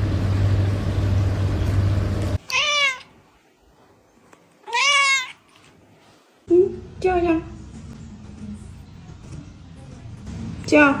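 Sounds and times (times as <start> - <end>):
steady humming noise: 0.0 - 2.4
cat meowing: 2.4 - 3.2, 4.6 - 5.6.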